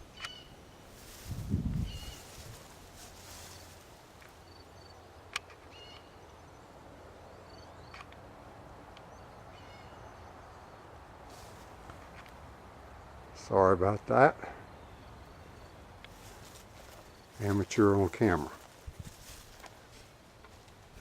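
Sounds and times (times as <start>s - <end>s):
bird chirps: 0.1s - 0.6s, 4.4s - 8.0s, 9.0s - 10.8s.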